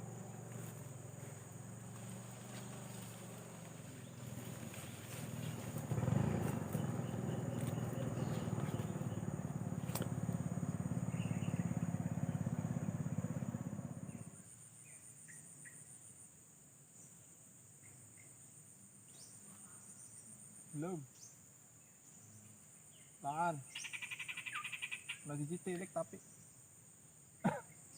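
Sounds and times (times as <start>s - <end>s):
motor engine humming: 0.0s - 14.4s
insects trilling: 0.0s - 27.9s.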